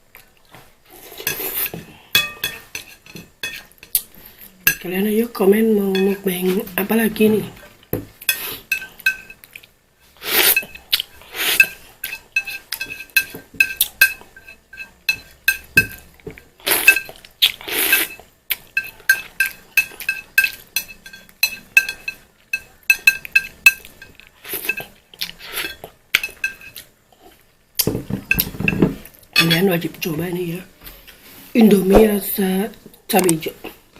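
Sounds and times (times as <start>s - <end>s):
longer noisy eating sounds: 0.0s - 31.8s
cutlery clinking against bowl: 1.2s - 4.1s, 5.9s - 6.6s, 8.3s - 9.6s, 11.5s - 17.2s, 17.9s - 26.9s, 28.1s - 29.8s.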